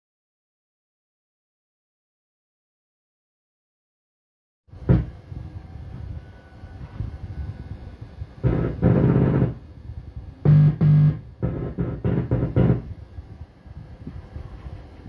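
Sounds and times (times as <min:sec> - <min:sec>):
low background hum: 0:04.7 - 0:15.0
synthesizer notes: 0:10.5 - 0:12.8.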